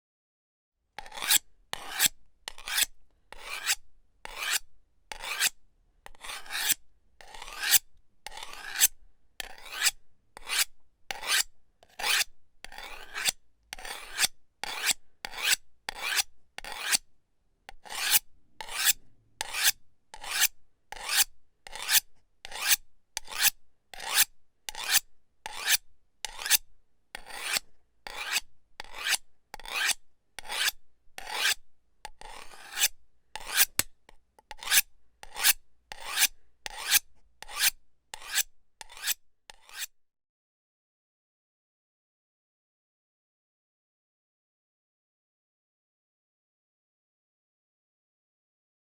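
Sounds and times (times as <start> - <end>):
knife sharpening strokes: 1.0 - 13.4, 18.0 - 26.6, 27.2 - 27.6, 28.2 - 31.6, 32.2 - 33.9, 34.5 - 39.9.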